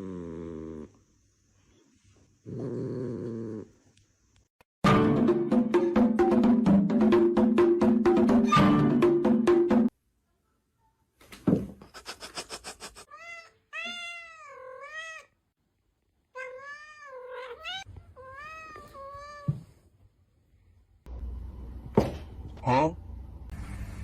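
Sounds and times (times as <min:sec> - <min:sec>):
cat meowing: 0:13.1 - 0:15.4, 0:16.3 - 0:19.6.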